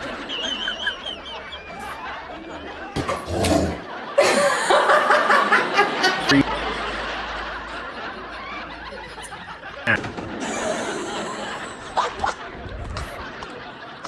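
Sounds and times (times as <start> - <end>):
person laughing: 3.6 - 6.5.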